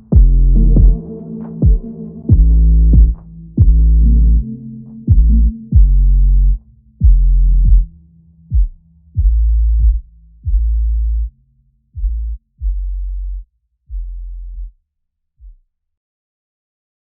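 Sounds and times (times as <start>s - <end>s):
electronic music with deep bass: 0.0s - 11.3s.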